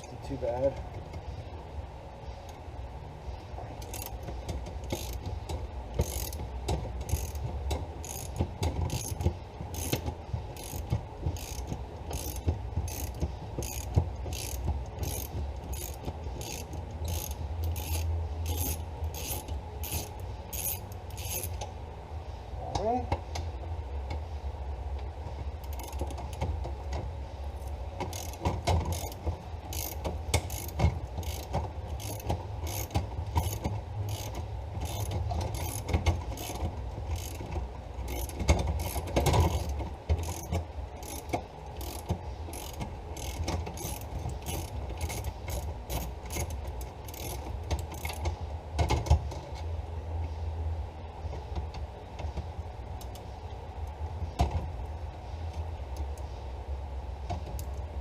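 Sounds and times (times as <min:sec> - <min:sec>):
socket ratchet clicking: 0:04.8 - 0:05.3, 0:06.0 - 0:06.4, 0:08.0 - 0:21.6, 0:28.0 - 0:37.5, 0:38.1 - 0:48.3.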